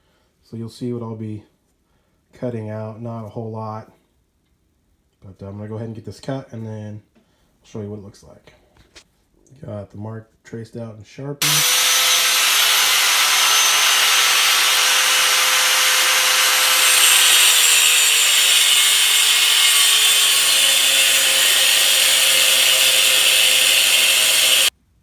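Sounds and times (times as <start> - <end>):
power tool cutting steel: 11.4 - 24.7.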